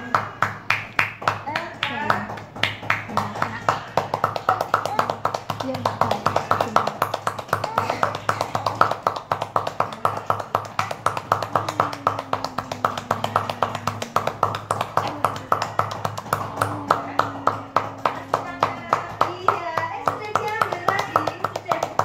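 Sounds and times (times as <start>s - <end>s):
child holding a vocal tone: 11.3s - 15.8s.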